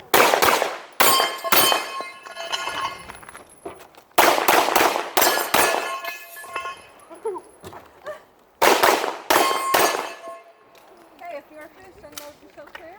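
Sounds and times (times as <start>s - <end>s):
pistol shots: 0.1s - 2.2s, 4.2s - 6.2s, 8.6s - 10.4s
steel targets clanging: 1.0s - 3.4s, 4.9s - 7.1s, 9.3s - 10.6s.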